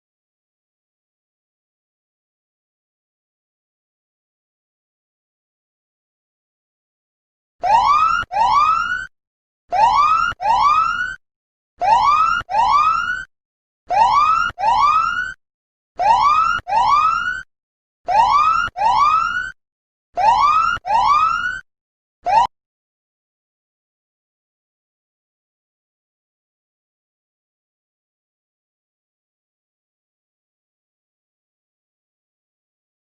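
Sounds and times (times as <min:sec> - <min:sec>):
electronic siren whooping: 0:07.6 - 0:09.1, 0:09.7 - 0:11.2, 0:11.8 - 0:13.3, 0:13.9 - 0:15.4, 0:16.0 - 0:17.5, 0:18.1 - 0:19.6, 0:20.2 - 0:21.6, 0:22.3 - 0:22.5.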